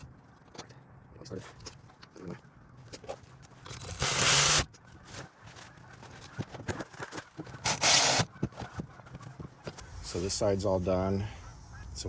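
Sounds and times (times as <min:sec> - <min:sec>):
loud hiss bursts: 0:07.7 - 0:08.2.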